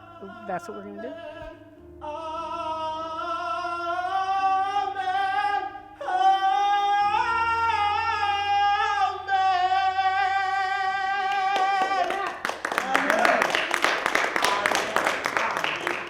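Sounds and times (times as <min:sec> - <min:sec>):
soprano singing with vibrato: 0:00.0 - 0:01.6
low sustained accompaniment: 0:00.0 - 0:10.8.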